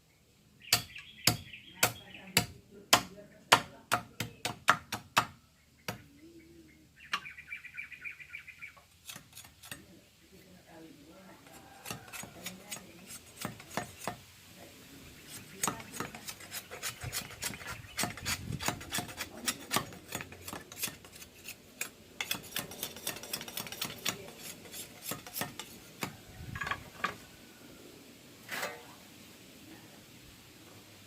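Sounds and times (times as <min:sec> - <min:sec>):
bamboo scraped by hand: 0:08.8 - 0:10.0, 0:11.4 - 0:27.3, 0:28.4 - 0:29.0.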